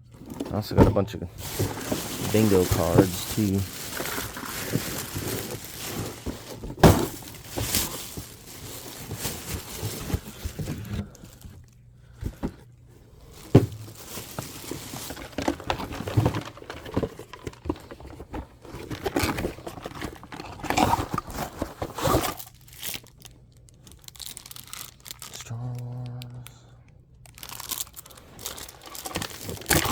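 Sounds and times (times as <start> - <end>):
packaging rustling and crinkling: 0.1 - 12.6, 13.2 - 25.5, 27.2 - 29.9
knocks and thuds of items set down: 0.2 - 8.0, 13.4 - 14.0.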